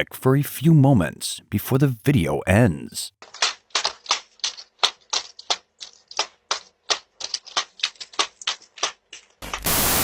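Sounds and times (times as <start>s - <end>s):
pogo stick clacking: 3.2s - 9.6s.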